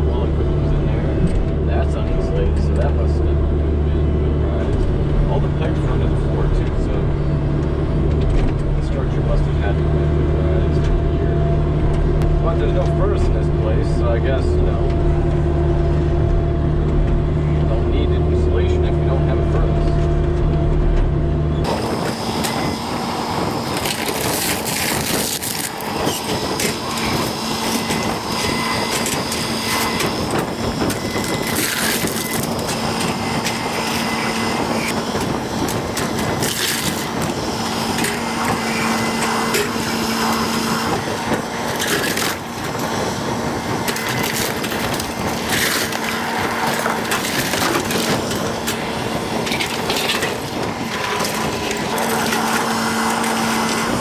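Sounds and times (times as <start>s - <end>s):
excavator engine and hydraulic hum: 0.0s - 54.0s
wood framing cracking and splintering: 21.6s - 54.0s.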